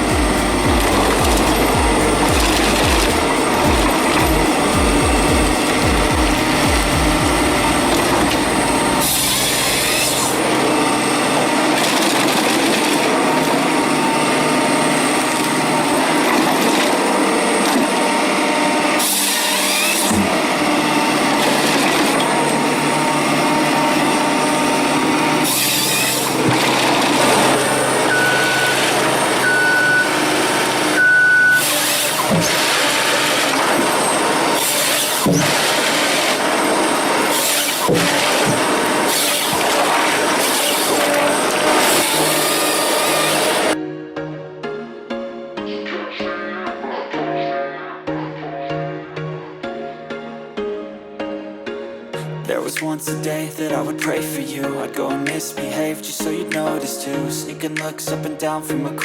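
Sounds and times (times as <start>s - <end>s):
heavy machinery running: 0.0s - 43.8s
short high beeps: 28.1s - 30.2s, 31.0s - 31.7s.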